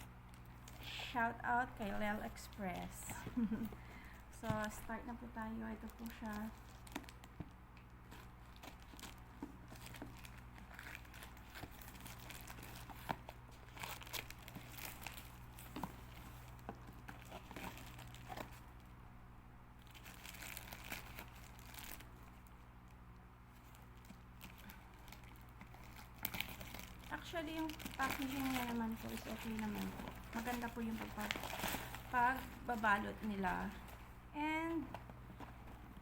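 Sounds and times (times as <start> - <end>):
steady low hum: 0.0 - 36.0
wrapping crinkling and tearing: 4.6 - 7.4, 8.0 - 18.9, 19.8 - 22.6, 23.5 - 34.2.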